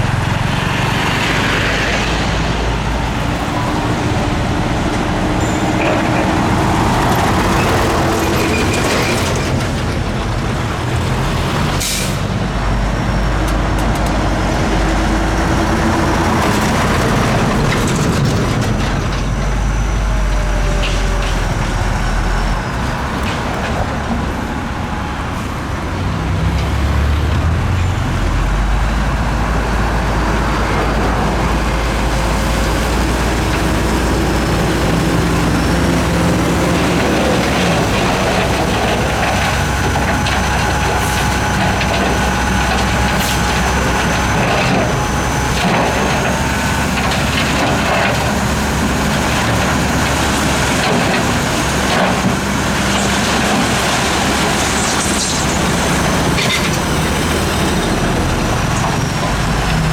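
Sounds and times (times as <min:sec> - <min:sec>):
diesel machinery rumbling: 0:00.0 - 0:59.9.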